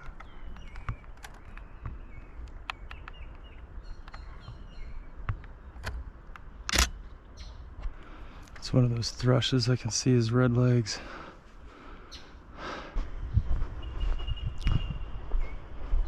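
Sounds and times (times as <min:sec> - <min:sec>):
outdoor background noise: 0:00.0 - 0:16.0
small birds chirping: 0:00.0 - 0:16.0
sharp clicks: 0:05.2 - 0:07.0.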